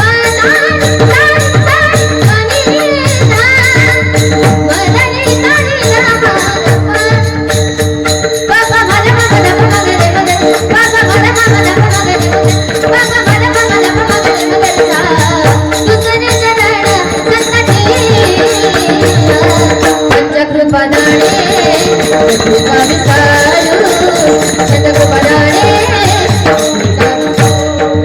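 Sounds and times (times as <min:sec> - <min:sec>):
drum beat: 0:00.0 - 0:20.3, 0:21.0 - 0:28.0
voices singing: 0:08.9 - 0:20.2, 0:20.8 - 0:27.9.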